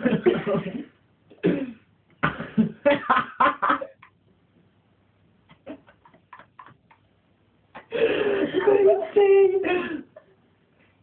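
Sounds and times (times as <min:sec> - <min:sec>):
person coughing: 0:01.4 - 0:02.8.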